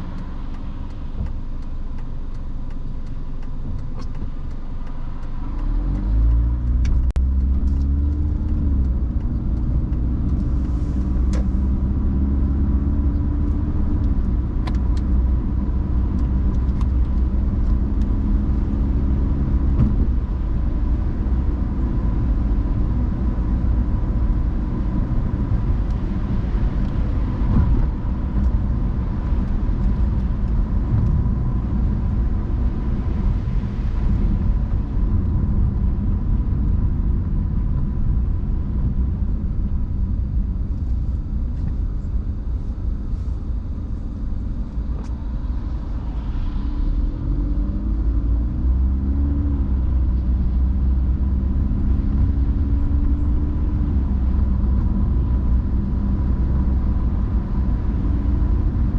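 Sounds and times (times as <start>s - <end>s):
car accelerating: 0.0s - 40.8s
road rumble: 0.0s - 58.9s
sharp clicks: 0.1s - 10.5s.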